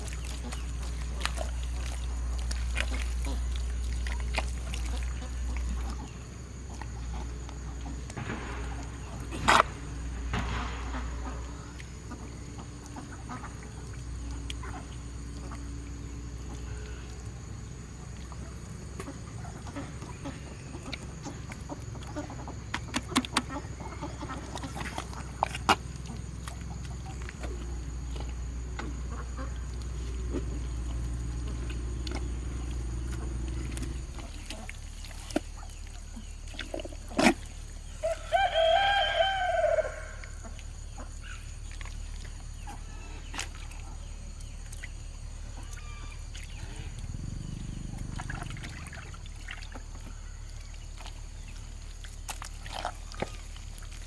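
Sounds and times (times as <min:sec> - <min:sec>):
steady low hum: 0:00.0 - 0:54.0
chicken long loud call: 0:38.0 - 0:40.4.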